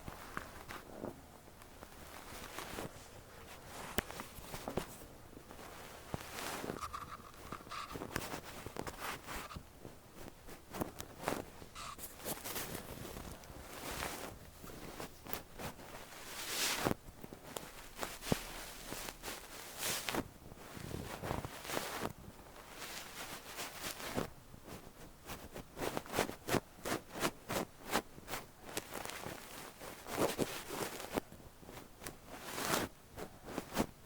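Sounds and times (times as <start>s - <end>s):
fluff brushing against microphone: 2.0s - 17.0s.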